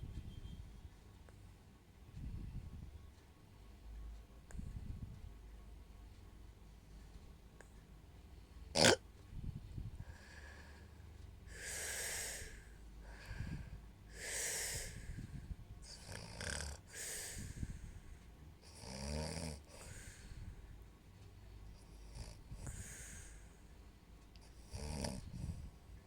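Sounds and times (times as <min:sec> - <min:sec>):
woman snoring: 0:08.8 - 0:09.0, 0:11.5 - 0:12.6, 0:15.9 - 0:17.5, 0:18.7 - 0:20.0, 0:24.6 - 0:25.6.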